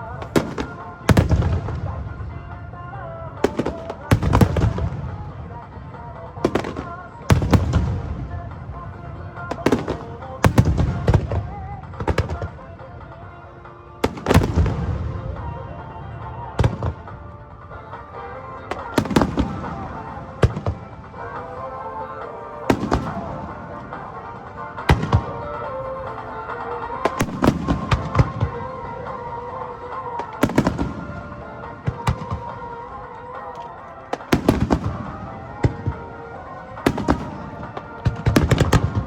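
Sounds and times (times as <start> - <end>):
crackling fireworks reports: 0.0 - 39.0
music playing: 0.0 - 39.0
fireworks booming: 18.7 - 21.4, 22.7 - 24.0, 27.0 - 28.8, 34.1 - 36.0, 36.8 - 39.0.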